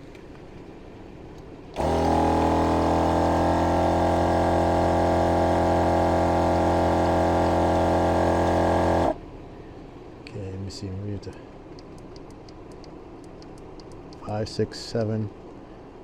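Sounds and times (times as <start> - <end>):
air compressor humming: 1.8 - 9.2.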